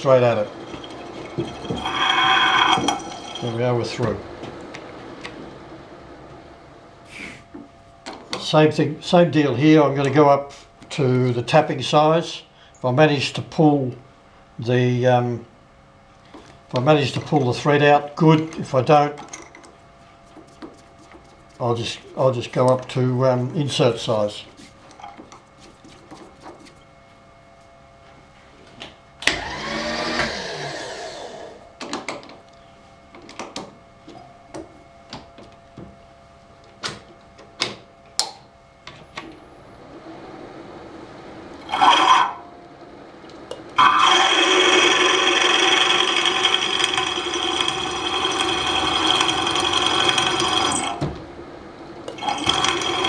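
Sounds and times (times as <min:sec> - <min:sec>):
drill motor running: 0:00.0 - 0:07.3, 0:29.2 - 0:31.6, 0:39.0 - 0:53.0.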